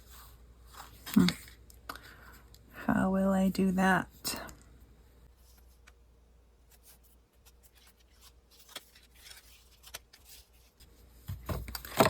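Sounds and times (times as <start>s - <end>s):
paper handling clicks and rustles: 0.1s - 2.1s, 6.8s - 12.0s.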